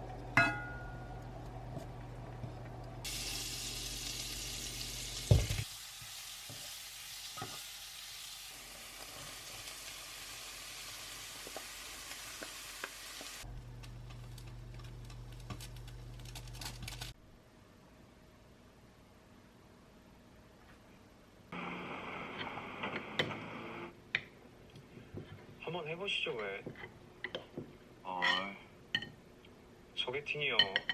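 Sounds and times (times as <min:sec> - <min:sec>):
low steady hum: 0:00.0 - 0:05.6, 0:13.4 - 0:22.5
food sizzling in frying pan: 0:03.0 - 0:13.5.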